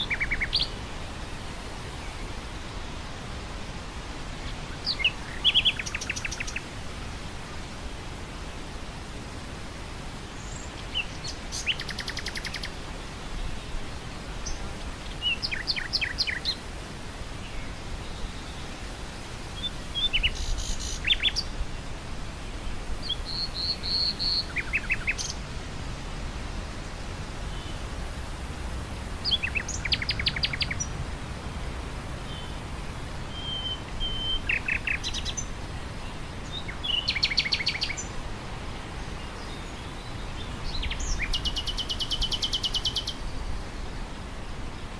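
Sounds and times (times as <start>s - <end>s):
nightingale singing: 0.0s - 0.8s, 4.4s - 6.6s, 10.4s - 12.8s, 14.4s - 16.6s, 19.6s - 21.5s, 23.0s - 25.4s, 29.2s - 30.9s, 33.3s - 35.5s, 36.4s - 38.2s, 39.3s - 43.3s
wind through grass: 0.0s - 44.9s.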